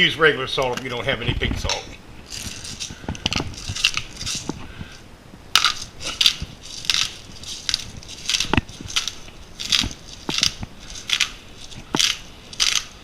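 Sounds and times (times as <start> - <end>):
salt grinder crunching: 2.2 - 5.0, 5.6 - 13.0.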